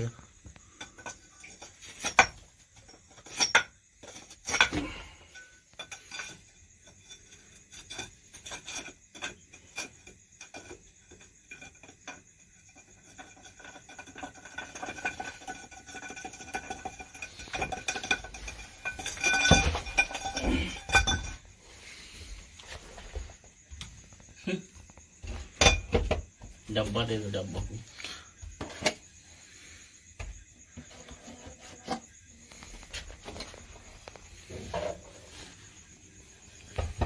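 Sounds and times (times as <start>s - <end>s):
hard objects clinking and clattering: 0.6s - 22.2s.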